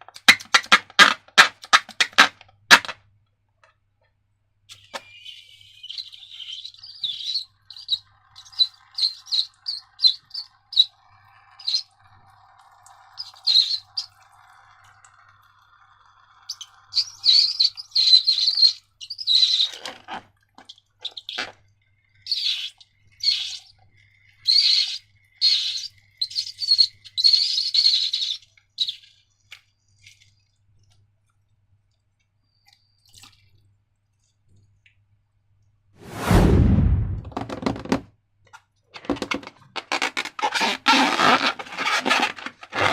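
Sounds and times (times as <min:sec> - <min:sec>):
rubber balloon squeaking: 0:00.2 - 0:02.9, 0:39.1 - 0:42.9.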